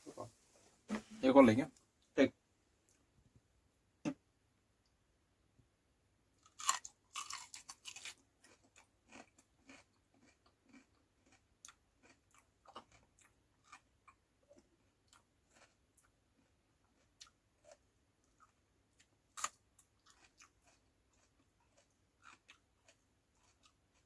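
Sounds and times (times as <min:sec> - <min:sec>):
crunchy chewing: 0:06.4 - 0:24.0.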